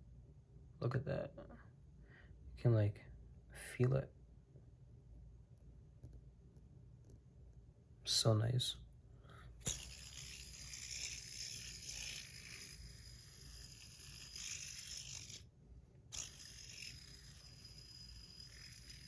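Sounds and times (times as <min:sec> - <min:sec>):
fidget spinner whirring: 0:09.6 - 0:15.5, 0:16.1 - 0:19.0.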